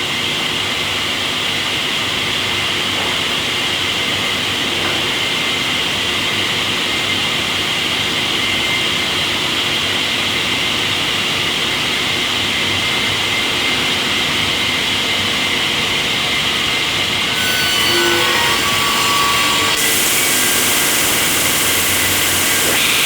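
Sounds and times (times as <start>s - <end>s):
sawmill machinery hissing: 17.0s - 23.0s.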